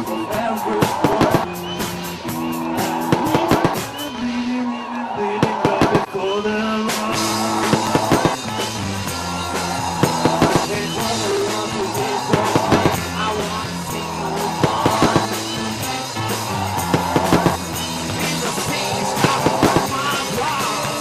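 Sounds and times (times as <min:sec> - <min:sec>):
rock music: 0:00.0 - 0:21.0
drum kit hits: 0:06.9 - 0:21.0.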